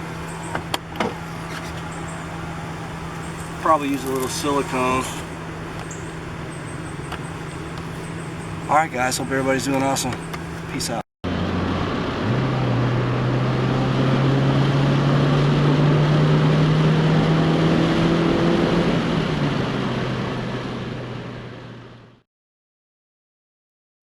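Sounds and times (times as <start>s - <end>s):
car engine running: 0.0s - 17.1s
road noise: 0.0s - 22.2s.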